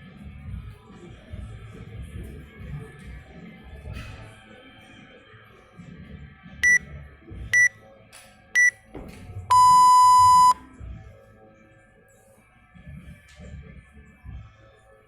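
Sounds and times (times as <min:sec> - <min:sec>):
long lower timer beep: 0:09.5 - 0:10.6
short high timer beeps: 0:09.5 - 0:10.6.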